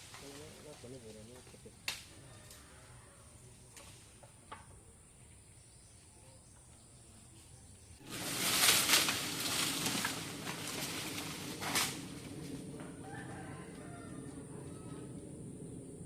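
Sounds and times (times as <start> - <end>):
branch cracking: 0.0 - 2.7, 8.1 - 14.0
high insect drone: 0.0 - 16.0
leafy branches crashing: 8.0 - 13.2.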